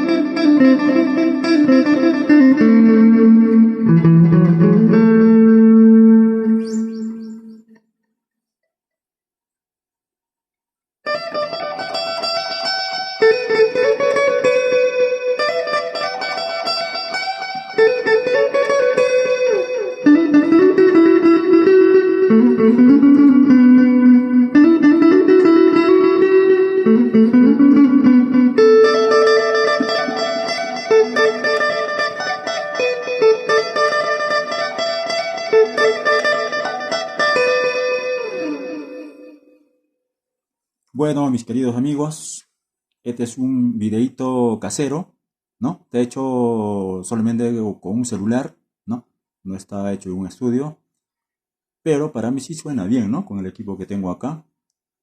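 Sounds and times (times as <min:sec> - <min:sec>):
electric guitar melody: 0:00.0 - 0:07.8, 0:11.1 - 0:39.8.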